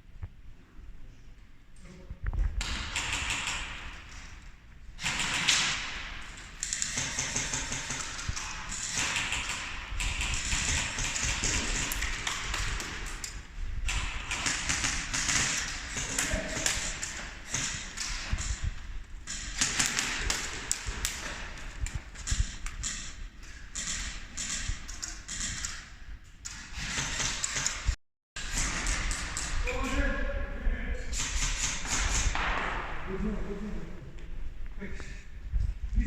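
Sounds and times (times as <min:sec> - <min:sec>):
sharp taps and thuds: 0:31.1 - 0:33.1.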